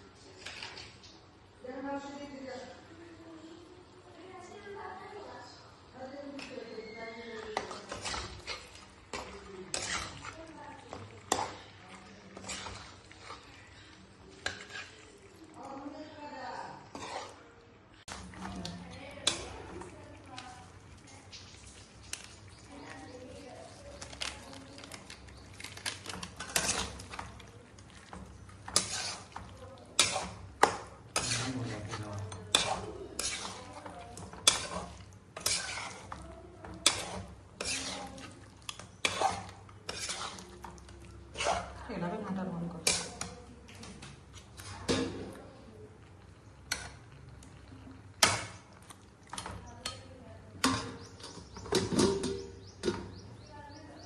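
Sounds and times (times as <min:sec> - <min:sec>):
utensils and dishes clinking: 0:06.4 - 0:15.6, 0:18.1 - 0:41.8, 0:46.6 - 0:53.2.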